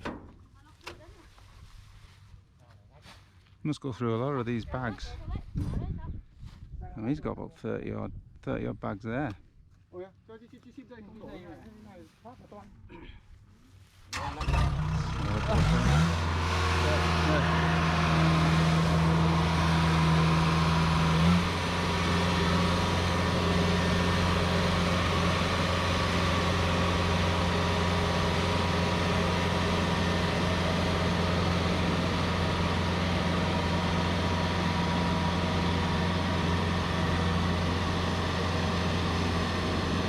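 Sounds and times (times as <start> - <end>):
harvester engine humming: 13.4 - 40.0.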